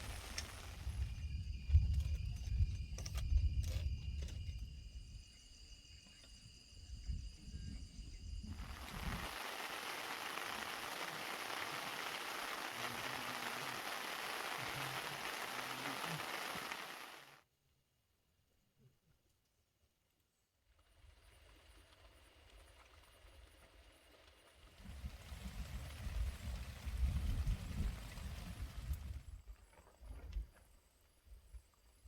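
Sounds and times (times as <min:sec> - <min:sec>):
faint steady high tones: 0:05.4 - 0:17.4
rain falling: 0:08.6 - 0:17.4.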